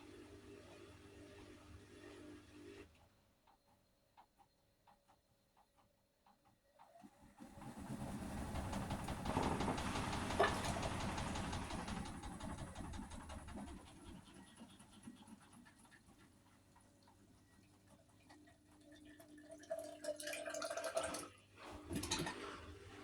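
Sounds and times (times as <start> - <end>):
washing machine drum rumbling: 7.6 - 14.2.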